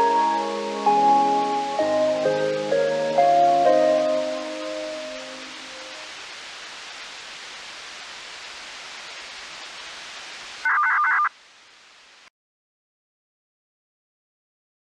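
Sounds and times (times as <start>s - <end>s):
radio hiss: 8.3s - 11.4s.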